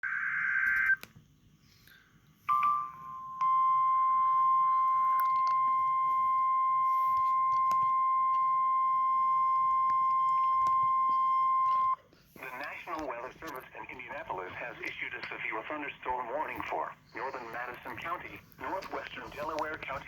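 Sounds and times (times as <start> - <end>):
steady warning alarm tone: 0.0 - 1.0, 2.5 - 12.0
brief beep: 2.5 - 12.0.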